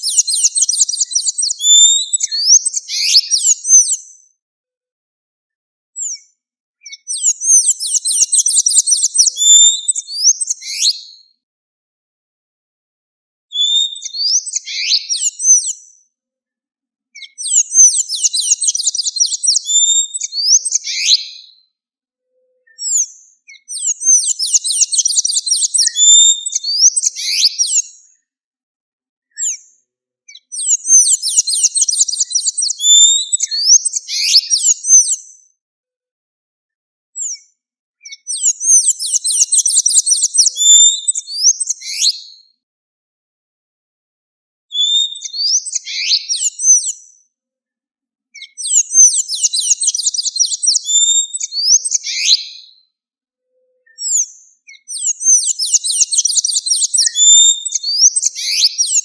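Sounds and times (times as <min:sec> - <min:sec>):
bird twittering: 0:00.0 - 0:03.9, 0:06.8 - 0:11.0, 0:13.6 - 0:15.4, 0:17.2 - 0:21.4, 0:22.6 - 0:27.8, 0:30.3 - 0:35.1, 0:38.0 - 0:42.2, 0:44.8 - 0:46.9, 0:48.4 - 0:52.6, 0:53.8 - 0:59.0.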